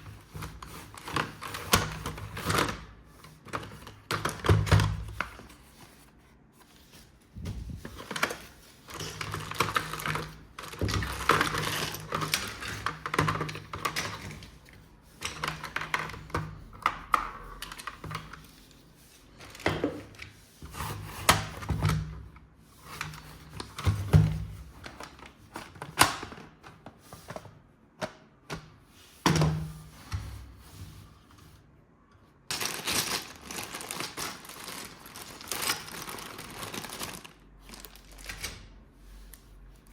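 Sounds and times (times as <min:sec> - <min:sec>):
packaging rustling: 0:00.0 - 0:14.6, 0:19.2 - 0:20.2, 0:32.5 - 0:39.5.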